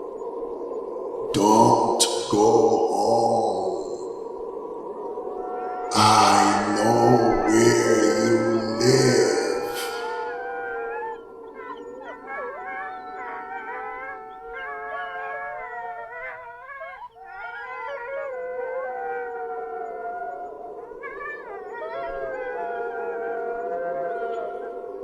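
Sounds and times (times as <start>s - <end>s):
chorus of wavering howls: 0.0s - 25.0s.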